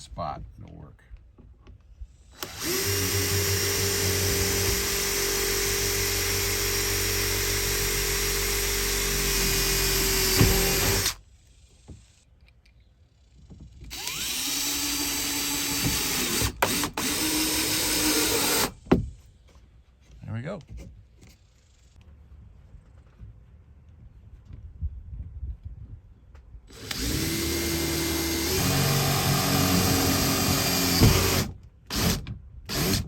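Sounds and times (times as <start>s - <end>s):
power drill driving screws: 2.2s - 11.2s, 13.9s - 18.8s, 26.7s - 33.0s.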